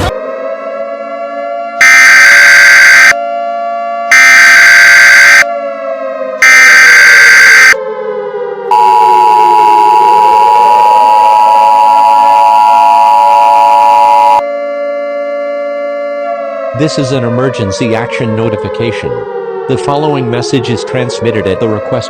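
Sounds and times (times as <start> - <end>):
wailing siren: 0.0 - 22.0
two-tone attention signal: 1.8 - 3.2, 4.1 - 5.4, 6.4 - 7.8, 8.7 - 14.4.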